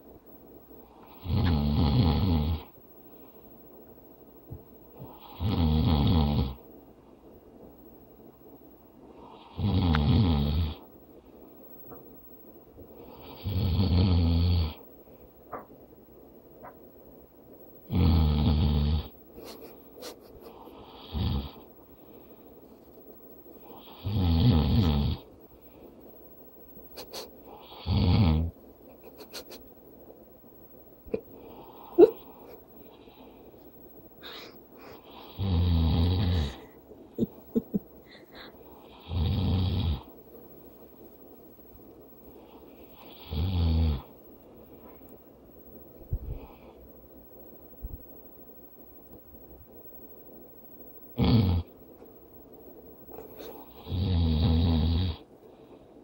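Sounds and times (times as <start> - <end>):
man snoring: 1.0 - 2.7, 5.0 - 6.6, 9.2 - 10.8, 13.1 - 14.8, 17.9 - 19.1, 20.7 - 21.6, 23.7 - 25.2, 27.6 - 28.5, 34.2 - 36.6, 38.8 - 40.1, 43.0 - 44.1, 51.2 - 51.7, 53.7 - 55.2
soft breath: 21.7 - 23.9, 25.4 - 26.2, 31.3 - 35.3, 38.0 - 39.0, 42.2 - 43.1, 46.0 - 47.0, 55.3 - 56.0.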